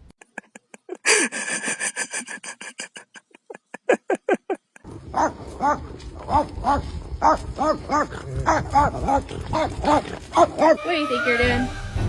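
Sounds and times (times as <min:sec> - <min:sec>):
dog yelping: 0:05.0 - 0:11.4
dog barking: 0:05.1 - 0:10.9.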